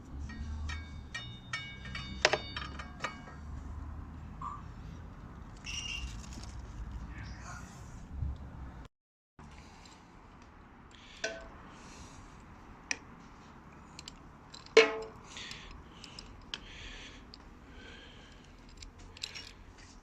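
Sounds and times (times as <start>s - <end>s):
metal hand tools clicking and scraping: 0.2s - 3.5s, 13.6s - 17.5s, 18.2s - 20.0s
sharp metallic knocks: 0.2s - 3.5s, 11.2s - 11.6s, 14.6s - 15.3s
loud ringing metal clank: 0.3s - 3.4s, 14.8s - 15.2s.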